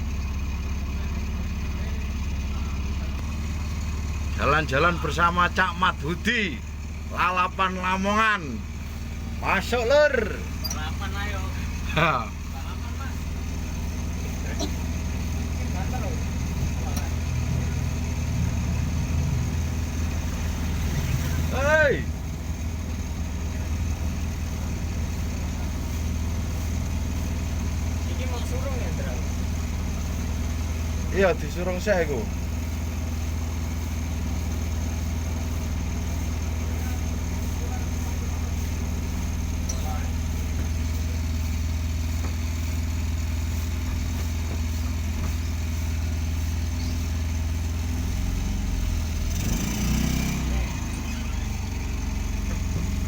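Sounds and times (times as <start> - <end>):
motorcycle engine running steadily: 0.0 - 53.0.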